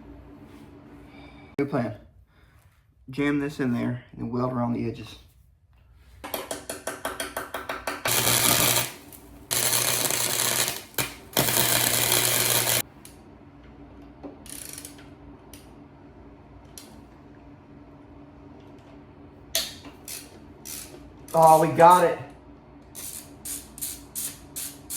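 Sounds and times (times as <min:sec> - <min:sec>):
welder arc crackling: 0:08.1 - 0:12.9, 0:19.6 - 0:22.3, 0:22.9 - 0:24.9.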